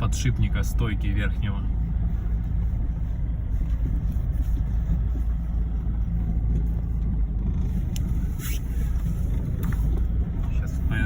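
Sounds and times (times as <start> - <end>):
low road rumble: 0.0 - 11.0.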